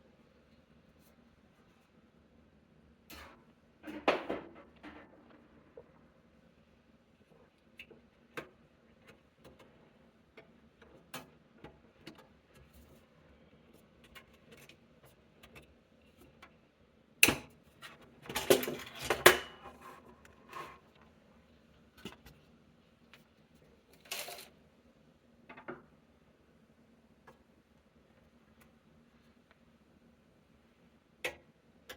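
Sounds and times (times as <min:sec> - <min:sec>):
clatter and knocks: 0:03.9 - 0:05.9.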